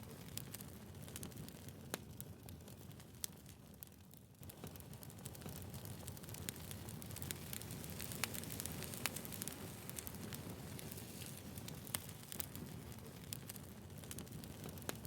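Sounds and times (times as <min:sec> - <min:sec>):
campfire flames rumbling: 0:00.0 - 0:15.0
wood crackling and popping: 0:00.0 - 0:15.0.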